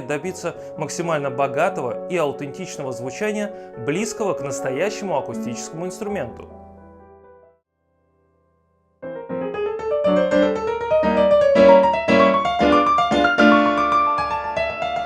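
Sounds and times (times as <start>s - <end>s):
digital piano playing: 0.0s - 7.6s, 9.0s - 15.0s.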